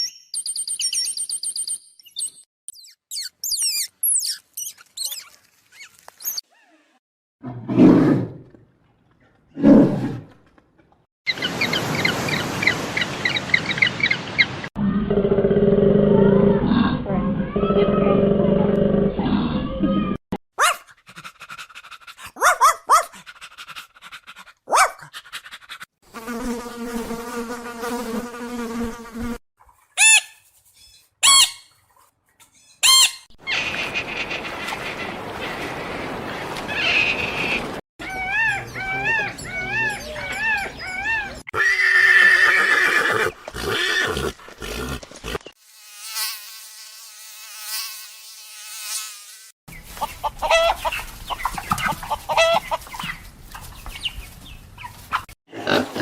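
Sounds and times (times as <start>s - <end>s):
thin buzzing: 45.6s - 49.6s.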